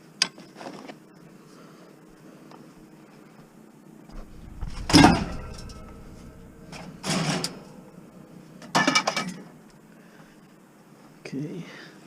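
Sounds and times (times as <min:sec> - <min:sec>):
rattle of knocks: 0:04.1 - 0:09.3
scrap metal clanking: 0:04.1 - 0:09.4.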